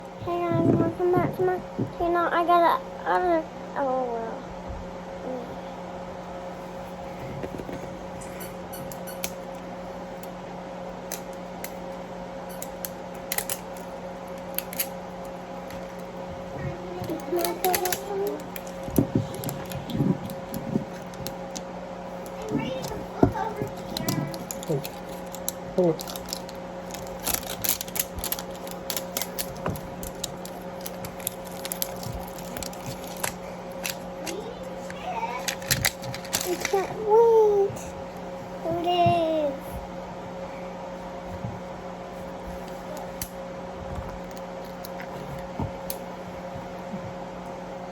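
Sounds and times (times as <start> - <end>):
steady low hum: 0.0 - 47.9
toy packaging clicks and crackles: 12.5 - 16.1, 16.9 - 37.0.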